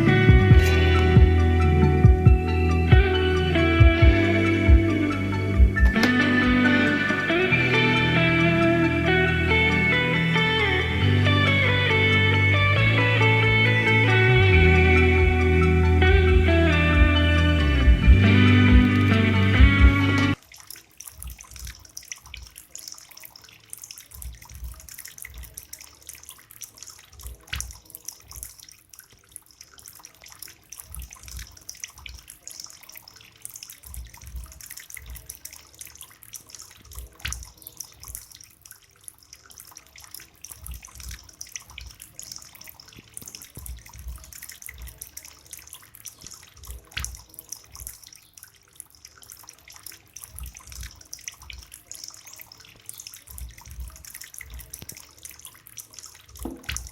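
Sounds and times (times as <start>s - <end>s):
water trickling from bamboo spout: 0.0s - 19.3s, 20.3s - 56.9s
sharp knocks: 56.4s - 56.9s.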